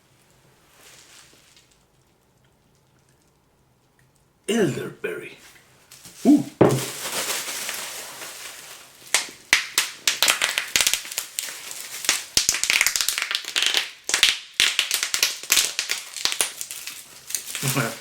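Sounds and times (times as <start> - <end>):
packaging crinkling: 6.6 - 13.4, 15.0 - 18.0.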